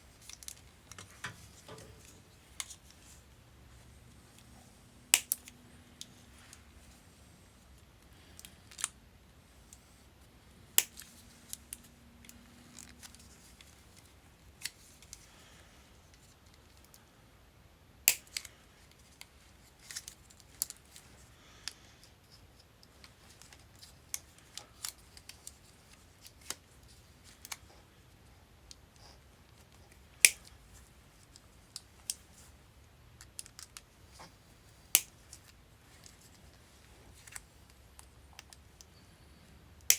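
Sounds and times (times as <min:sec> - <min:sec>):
brittle plastic clicking and snapping: 0:05.1 - 0:06.1, 0:08.4 - 0:09.0, 0:10.8 - 0:15.2, 0:18.0 - 0:21.0, 0:22.8 - 0:26.6, 0:29.5 - 0:30.6, 0:33.2 - 0:33.9, 0:34.9 - 0:36.2.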